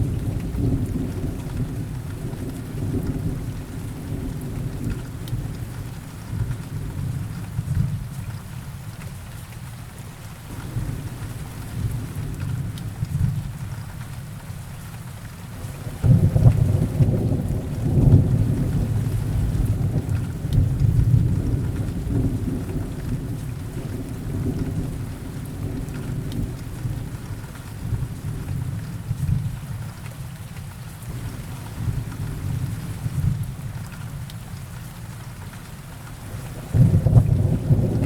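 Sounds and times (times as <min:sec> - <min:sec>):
steady rain: 0:00.0 - 0:38.0
distant thunder rumble: 0:15.8 - 0:29.5, 0:36.6 - 0:38.0.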